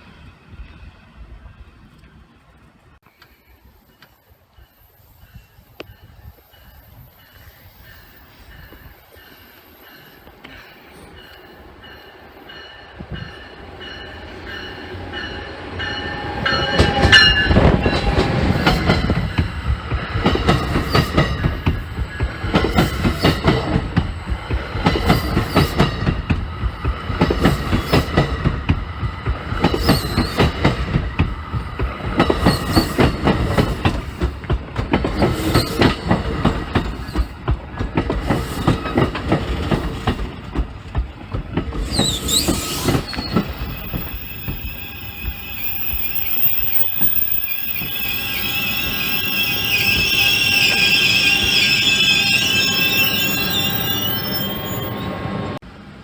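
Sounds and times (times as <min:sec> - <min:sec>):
train passing: 0:00.0 - 0:56.0
wheels clattering over rail joints: 0:16.5 - 0:50.9.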